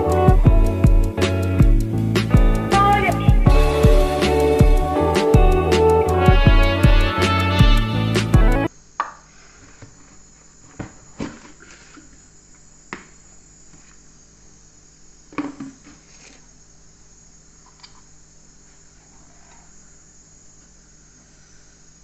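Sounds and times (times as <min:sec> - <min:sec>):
faint high hiss: 0:08.2 - 0:22.0.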